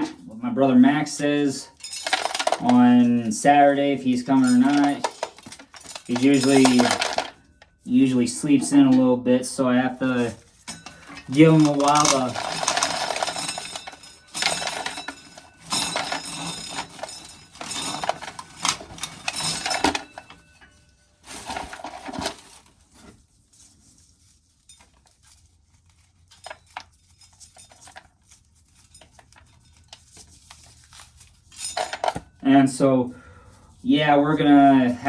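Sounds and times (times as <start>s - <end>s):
corn kernels rattling into container: 1.0s - 8.8s, 9.5s - 20.3s.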